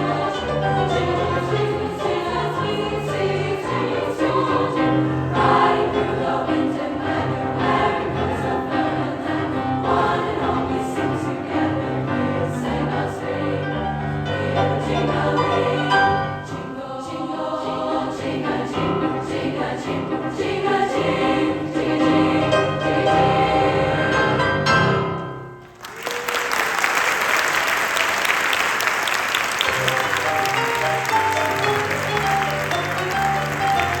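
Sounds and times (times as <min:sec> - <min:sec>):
choir singing: 0:00.0 - 0:25.0, 0:27.7 - 0:34.0
applause: 0:25.6 - 0:34.0
instrumental accompaniment: 0:29.5 - 0:34.0.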